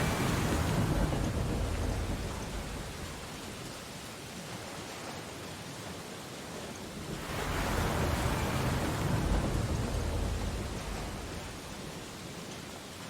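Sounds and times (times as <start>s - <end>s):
wave breaking and washing up: 0.0s - 4.0s, 6.6s - 12.6s
surf hiss: 0.0s - 5.4s, 6.4s - 13.0s.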